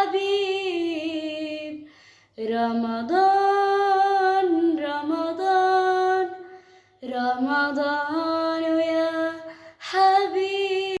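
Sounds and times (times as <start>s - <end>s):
woman singing unaccompanied: 0.0s - 11.0s
singer breathing: 1.8s - 2.4s, 6.4s - 7.0s.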